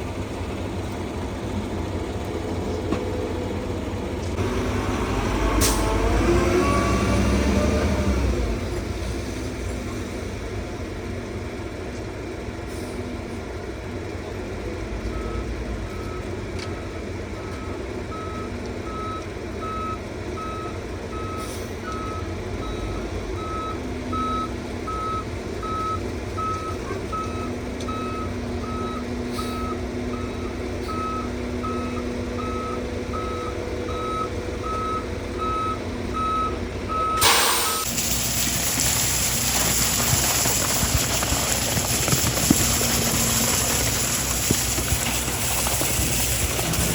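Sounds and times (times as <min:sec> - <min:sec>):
diesel engine running: 0:00.0 - 0:46.9
truck reversing alarm beeping: 0:03.1 - 0:08.6, 0:14.6 - 0:46.9.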